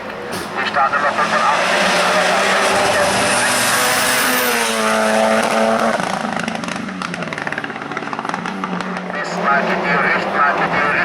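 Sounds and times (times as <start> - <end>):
race car passing at speed: 0.1 - 11.0.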